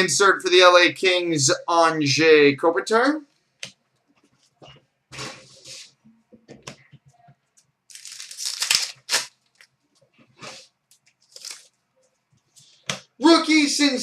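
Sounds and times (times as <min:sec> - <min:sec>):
plastic wrappers crinkling and tearing: 0:07.9 - 0:09.7, 0:10.9 - 0:11.8.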